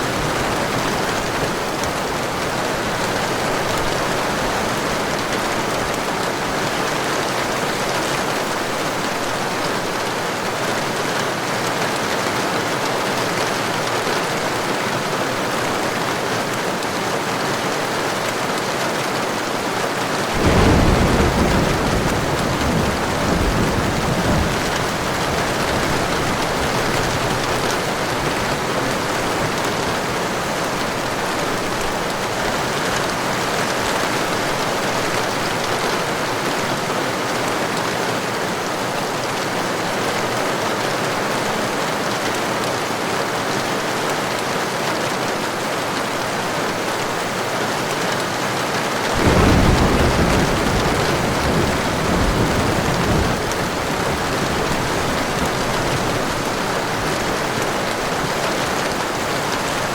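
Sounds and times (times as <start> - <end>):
heavy rain: 0.0 - 59.9
rumbling thunderclap: 20.4 - 29.7, 49.2 - 57.4.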